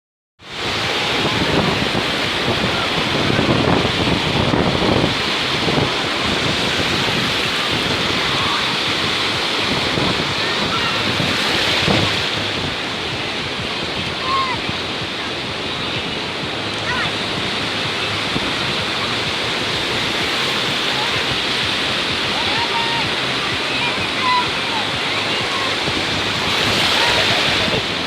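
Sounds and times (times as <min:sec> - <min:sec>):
waves washing onto beach: 0:00.4 - 0:28.0
wind blowing across microphone: 0:00.4 - 0:28.0.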